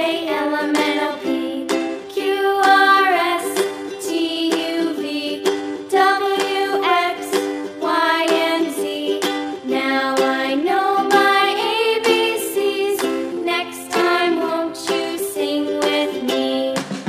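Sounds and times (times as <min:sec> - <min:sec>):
plucked string music: 0:00.0 - 0:17.0.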